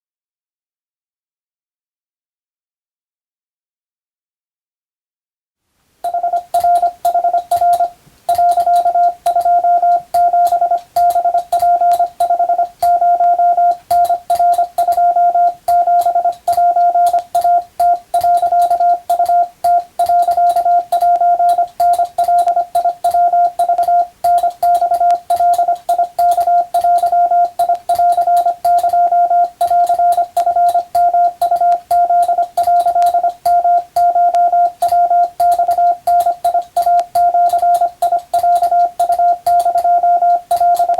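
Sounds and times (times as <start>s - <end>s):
keying clicks: 6.0s - 40.9s
morse code beeps: 6.1s - 40.9s.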